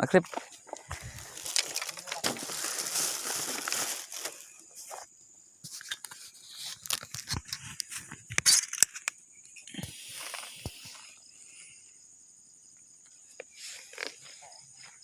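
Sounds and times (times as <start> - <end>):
high-pitched insect trill: 0.0 - 15.0
rustling and small knocks: 0.2 - 9.1.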